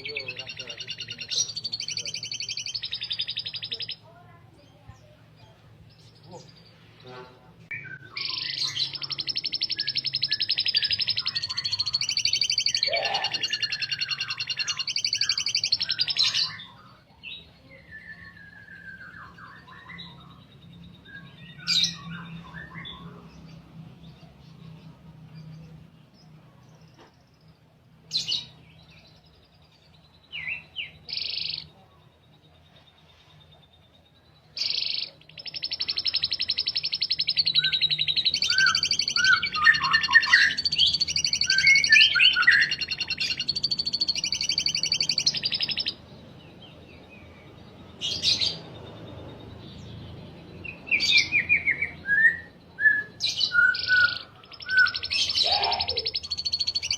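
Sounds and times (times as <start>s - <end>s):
canary short chirps: 0.0s - 4.0s, 8.2s - 16.5s, 34.6s - 46.0s, 53.8s - 56.9s
canary rolling trill: 8.3s - 16.5s, 34.7s - 45.9s, 54.7s - 56.9s.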